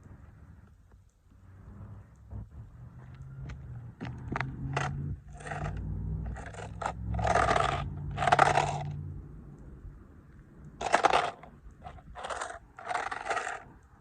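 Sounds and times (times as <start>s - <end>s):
crunching and scraping: 3.1s - 9.0s, 10.8s - 13.8s
toy car cracking under boot: 4.4s - 9.0s, 10.8s - 13.8s.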